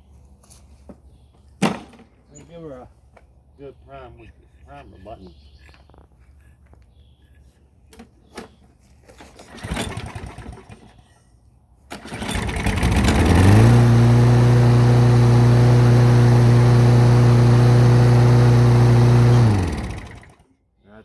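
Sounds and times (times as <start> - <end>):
lawn mower pull-start: 9.0 - 11.2, 11.9 - 20.5
lawn mower engine running: 9.2 - 11.2, 11.9 - 20.4.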